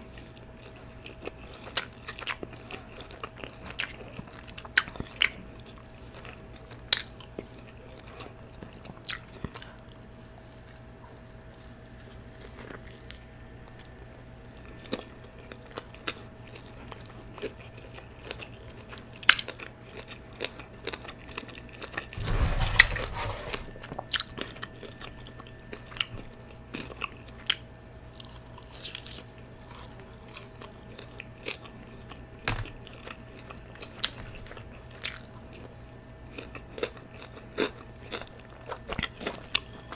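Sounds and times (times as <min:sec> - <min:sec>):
chewing and smacking: 0:00.1 - 0:14.0, 0:26.8 - 0:35.6.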